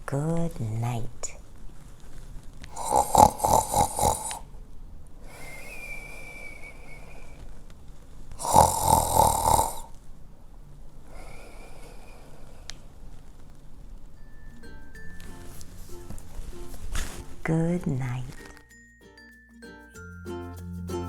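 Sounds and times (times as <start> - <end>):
cartoon rattling snores: 2.7 - 4.5, 8.4 - 9.9
high whistle on breath: 5.3 - 7.5.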